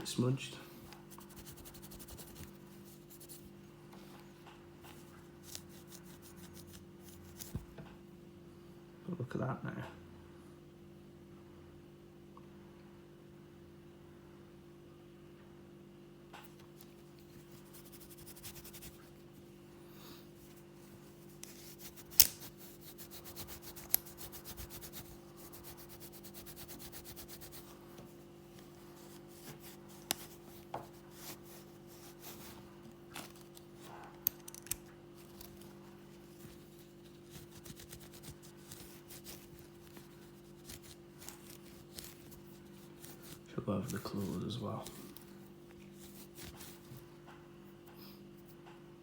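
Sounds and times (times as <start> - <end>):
cloth rubbing strokes: 1.0 - 4.2, 16.8 - 34.0, 35.2 - 47.1.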